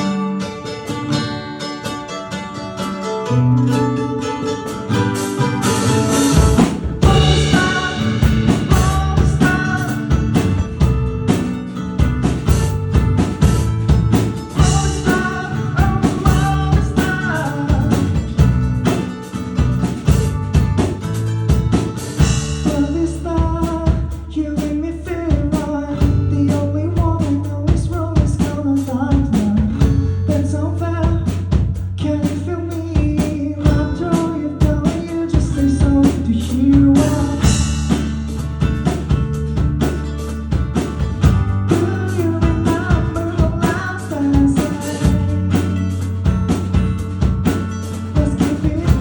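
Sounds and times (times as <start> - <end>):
rock band playing: 0.0 - 24.7, 33.1 - 49.0.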